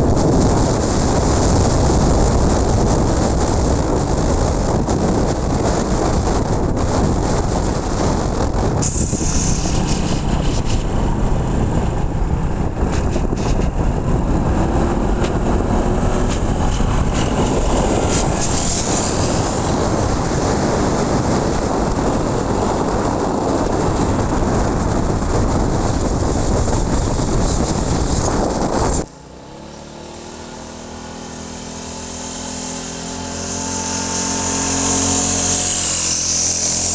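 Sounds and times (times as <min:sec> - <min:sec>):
road and wind rumble: 0:00.0 - 0:36.9
small engine running: 0:05.6 - 0:25.0, 0:28.2 - 0:36.9.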